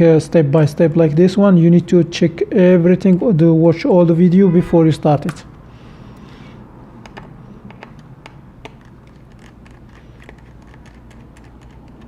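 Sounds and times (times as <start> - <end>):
steady low hum: 2.0 - 11.0.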